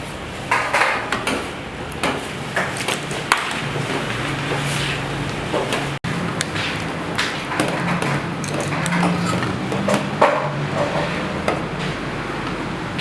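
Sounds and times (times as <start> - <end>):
kitchen utensils knocking: 5.5 - 12.0.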